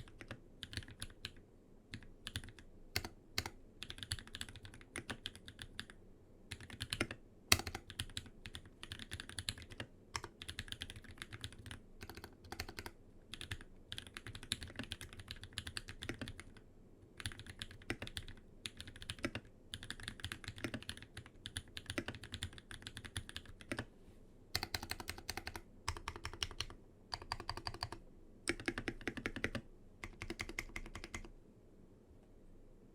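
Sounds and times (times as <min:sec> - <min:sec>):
mechanical keyboard typing: 0:00.0 - 0:16.6, 0:17.2 - 0:23.9, 0:24.6 - 0:31.3.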